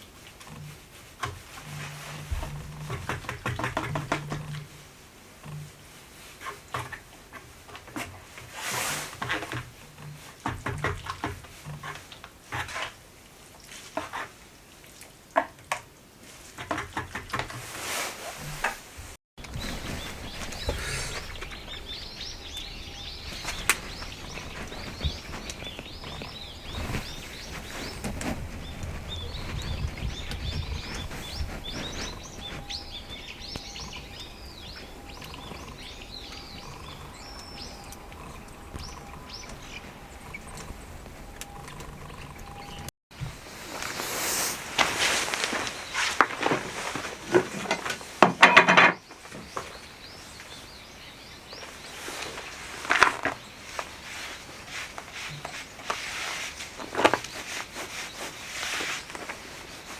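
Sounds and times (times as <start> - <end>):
low outdoor rumble: 19.4 - 43.6
small birds chirping: 19.4 - 47.9, 48.8 - 59.9.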